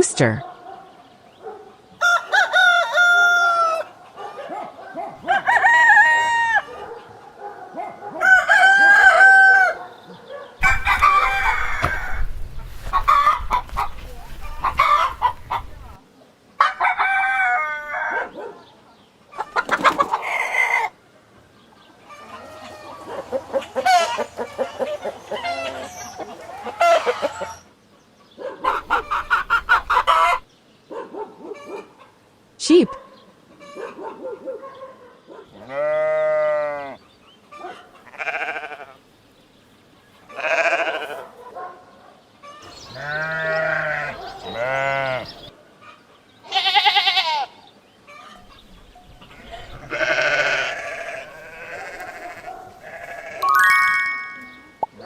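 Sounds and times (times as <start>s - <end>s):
rooster crowing: 2.0s - 4.0s, 5.2s - 6.8s, 8.2s - 9.8s, 10.6s - 16.0s, 16.6s - 18.3s, 28.7s - 30.4s
chickens clucking and squawking: 2.0s - 32.4s, 33.5s - 34.8s, 37.1s - 38.2s, 42.3s - 46.4s, 47.5s - 52.9s.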